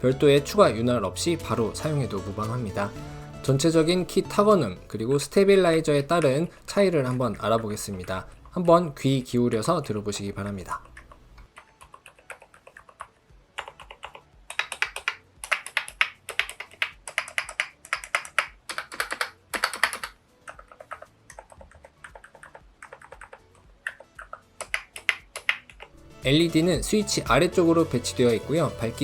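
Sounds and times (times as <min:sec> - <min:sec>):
mechanical keyboard typing: 0:09.5 - 0:25.9.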